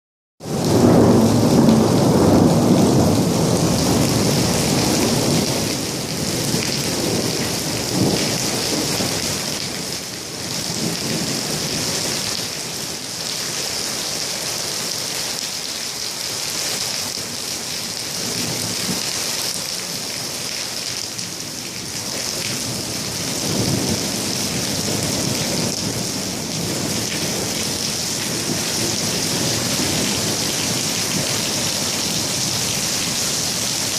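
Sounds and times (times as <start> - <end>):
thunder rumbling: 0.4 - 9.8, 22.6 - 33.9
heavy rain pouring: 0.4 - 33.9.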